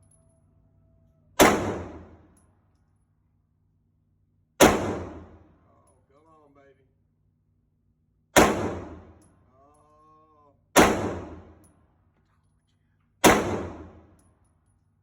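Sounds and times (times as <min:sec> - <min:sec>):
handgun shots: 0:01.4 - 0:02.1, 0:04.6 - 0:05.2, 0:08.4 - 0:09.1, 0:10.8 - 0:11.4, 0:13.2 - 0:14.0.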